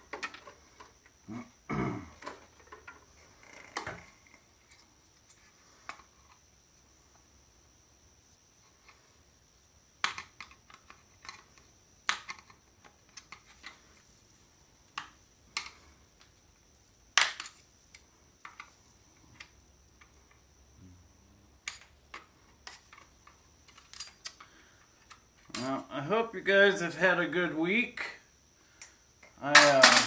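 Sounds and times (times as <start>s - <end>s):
metal parts clicking and knocking: 21.6s - 25.8s, 29.5s - 30.0s.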